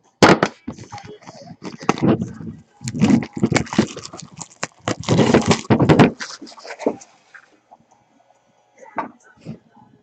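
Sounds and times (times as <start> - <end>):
packaging crinkling and tearing: 1.6 - 7.1.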